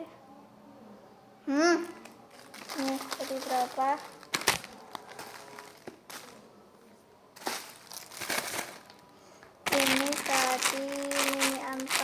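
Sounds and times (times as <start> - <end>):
crinkly packaging rustling: 1.9 - 6.5, 7.4 - 12.0.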